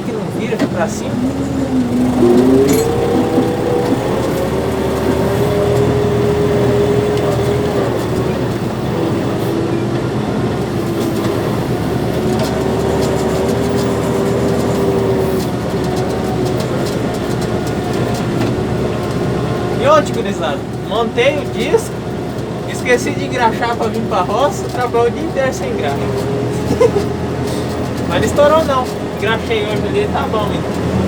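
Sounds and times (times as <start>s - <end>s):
steady whine: 0.0s - 5.3s
tractor engine rumbling: 0.0s - 31.0s.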